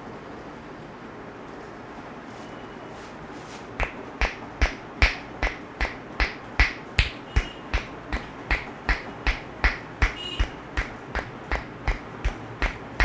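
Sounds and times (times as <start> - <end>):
hands slapping a head: 3.8 - 13.0.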